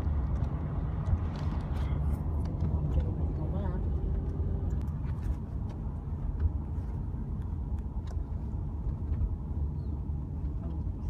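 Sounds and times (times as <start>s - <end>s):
moving car rumble: 0.0s - 11.0s.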